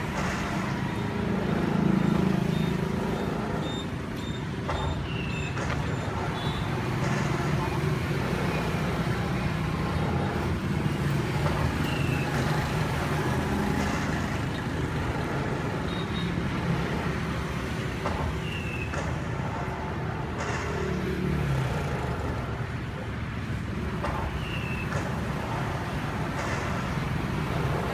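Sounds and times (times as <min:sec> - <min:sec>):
road traffic rumble: 0:00.0 - 0:27.9.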